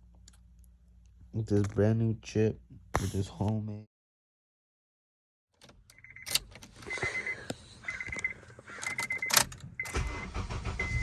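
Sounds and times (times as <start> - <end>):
keys jangling: 5.7 - 6.7, 8.8 - 9.7.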